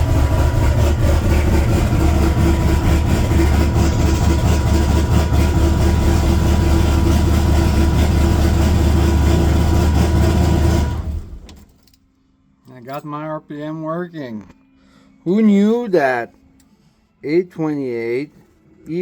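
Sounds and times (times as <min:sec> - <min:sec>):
engine idling: 0:00.0 - 0:11.5.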